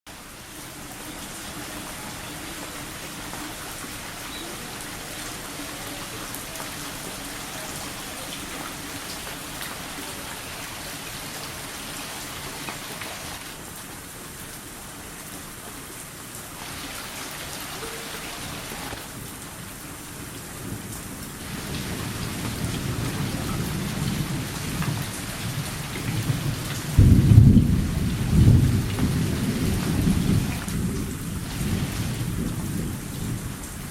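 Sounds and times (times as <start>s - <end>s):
rain falling: 0.1s - 33.9s
low rumble of thunder: 21.5s - 33.9s.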